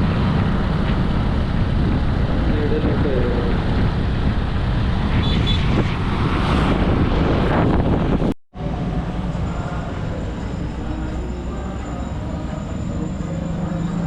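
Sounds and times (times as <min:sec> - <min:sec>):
wind buffeting microphone: 0:00.0 - 0:10.9
vehicle and road noise: 0:00.0 - 0:14.0.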